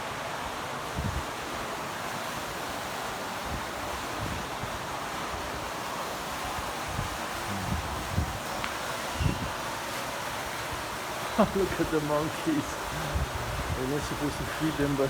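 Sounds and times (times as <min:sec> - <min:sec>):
wind buffeting microphone: 0:00.9 - 0:01.3, 0:06.4 - 0:09.7, 0:10.6 - 0:15.0.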